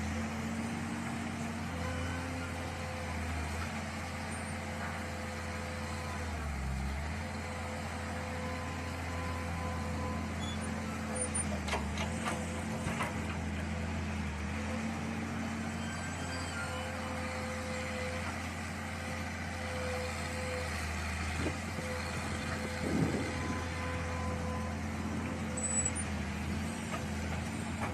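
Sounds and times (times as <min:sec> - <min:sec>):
excavator engine humming: 0:00.0 - 0:27.9.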